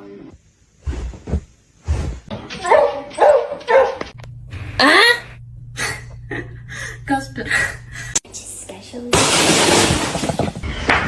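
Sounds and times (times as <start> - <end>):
dog barking: 2.6 - 4.1
low hum: 4.1 - 8.4.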